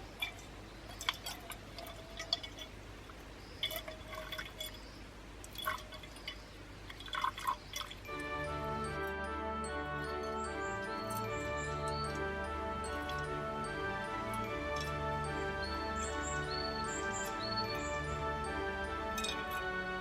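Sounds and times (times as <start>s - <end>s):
water dripping and trickling: 0.0s - 20.0s
background music: 8.1s - 20.0s.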